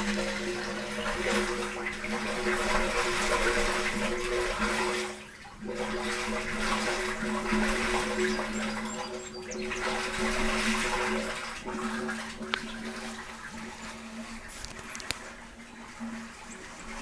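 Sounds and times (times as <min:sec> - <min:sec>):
sewage rushing and gurgling: 0:00.0 - 0:17.0.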